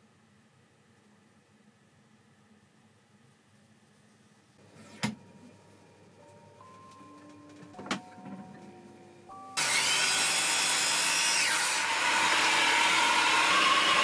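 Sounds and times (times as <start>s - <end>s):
electric power tool whining: 9.6s - 14.0s.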